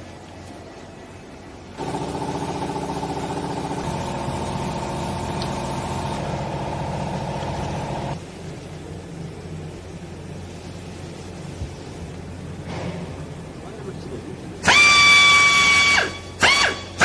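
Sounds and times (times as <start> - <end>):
steady electric hum: 0.0 - 17.0
hydraulic pump and motor running: 1.8 - 8.2, 12.6 - 17.0.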